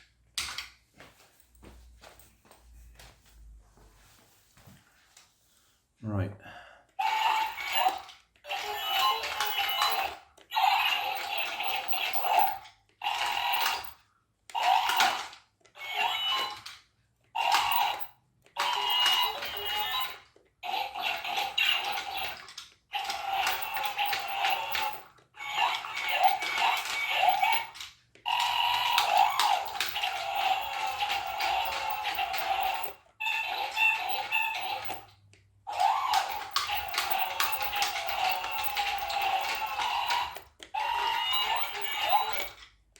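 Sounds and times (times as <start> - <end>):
toy robot electronic voice: 7.0 - 13.9, 14.6 - 16.7, 17.4 - 35.0, 35.7 - 42.6.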